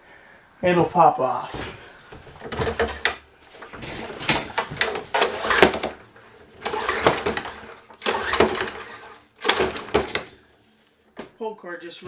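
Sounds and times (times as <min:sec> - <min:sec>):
small engine turning over: 0:06.6 - 0:10.0
recoil starter cord pulls: 0:06.6 - 0:10.3.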